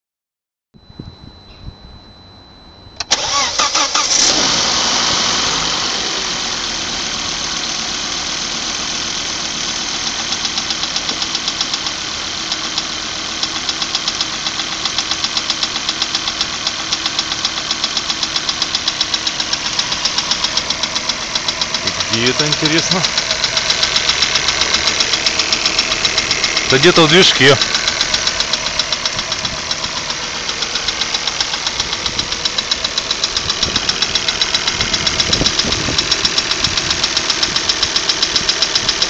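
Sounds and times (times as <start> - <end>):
car engine starting and idling: 2.8 - 39.0
rapid engine knock: 10.2 - 26.8, 27.6 - 39.0.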